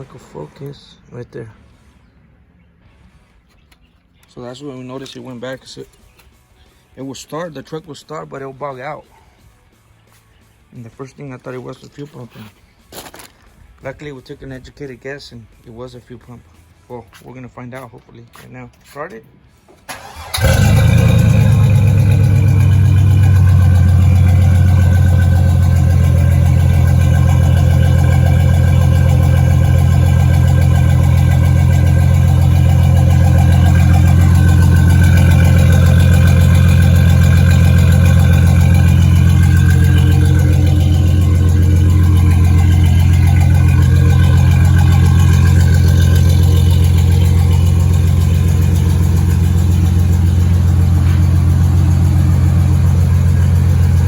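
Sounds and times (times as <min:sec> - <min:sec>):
truck engine idling: 0:19.9 - 0:54.0.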